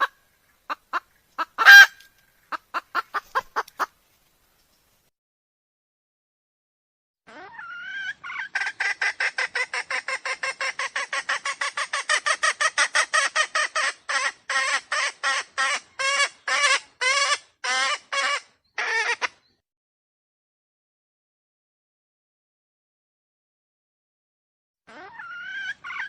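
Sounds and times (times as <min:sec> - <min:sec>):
wild chicken clucking: 0:00.0 - 0:04.0, 0:07.3 - 0:19.6, 0:24.9 - 0:26.0.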